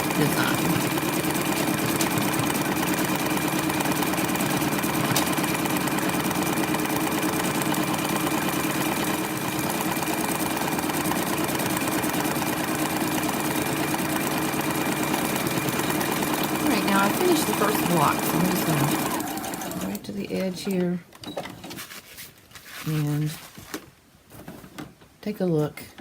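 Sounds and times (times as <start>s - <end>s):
sewing machine running: 0.0s - 20.0s.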